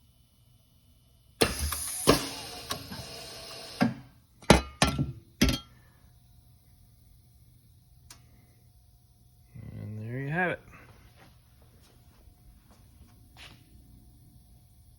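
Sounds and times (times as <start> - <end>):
air hiss: 1.4 - 4.0.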